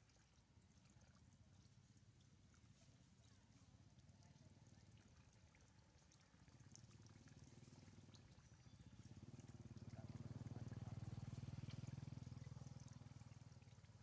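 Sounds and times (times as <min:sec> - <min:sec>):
low pulsing engine rumble: 0:07.4 - 0:14.0.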